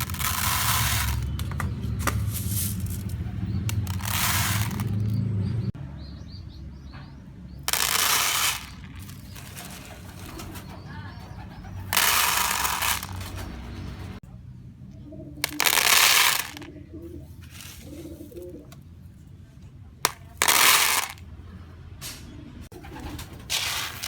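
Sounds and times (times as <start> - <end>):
loud rustling bursts: 0.0 - 5.2, 7.7 - 10.7, 11.7 - 14.2
pigeons cooing: 9.3 - 12.2, 16.6 - 18.8, 22.7 - 23.5.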